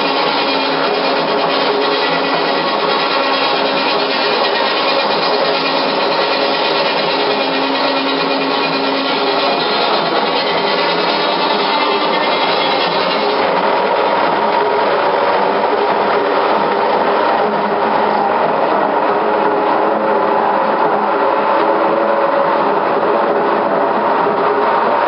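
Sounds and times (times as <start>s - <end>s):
sawmill machinery clattering: 0.0s - 18.3s.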